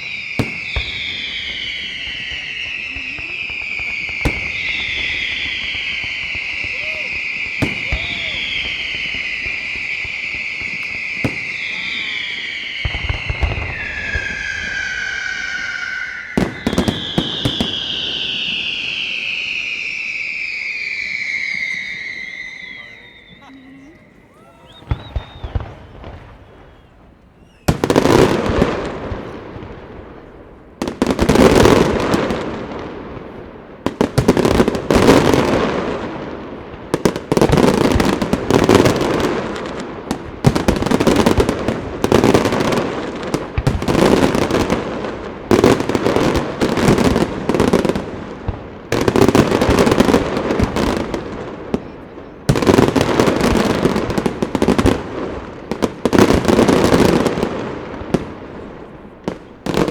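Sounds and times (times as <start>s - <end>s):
fireworks bursting with crackling: 0.0s - 59.9s.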